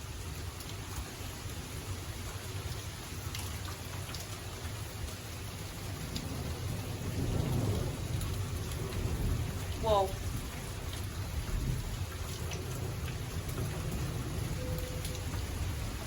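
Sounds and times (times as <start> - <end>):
rain falling steadily: 0.0 - 16.0
low rumble of thunder: 5.4 - 16.0.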